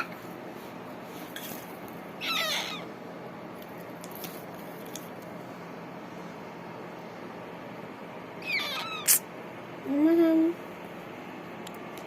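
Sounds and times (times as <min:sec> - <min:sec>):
cat meowing: 0:02.2 - 0:02.9, 0:08.4 - 0:09.2.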